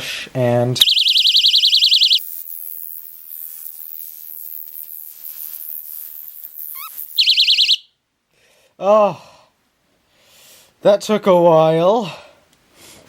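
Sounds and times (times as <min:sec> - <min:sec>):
personal alarm shrieking: 0:00.8 - 0:02.2, 0:06.8 - 0:07.9.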